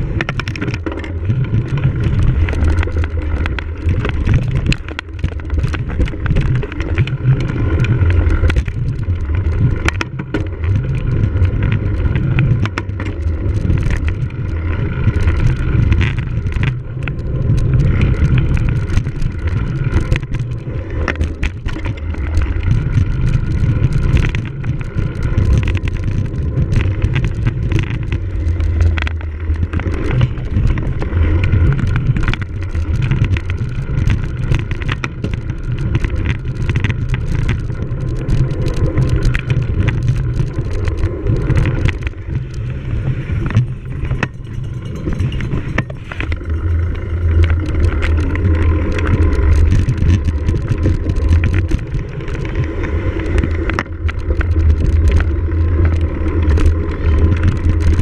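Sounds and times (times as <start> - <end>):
bike knocks and rattles: 0.0 - 58.0
rumble of wind and tyres: 0.0 - 58.0.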